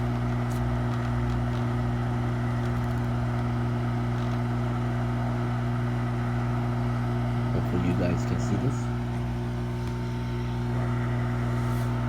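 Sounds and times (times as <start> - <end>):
hot air blower hum and hiss: 3.5 - 12.0.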